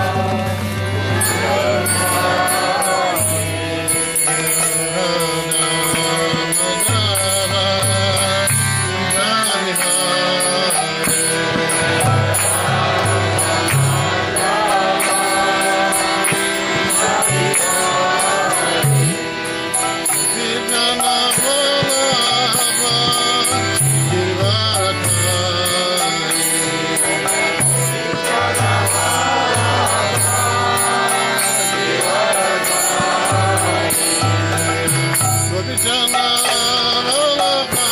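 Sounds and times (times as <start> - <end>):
voices chanting: 0.0 - 6.6, 9.8 - 25.4, 26.2 - 35.6
harmonium drone: 0.0 - 37.9.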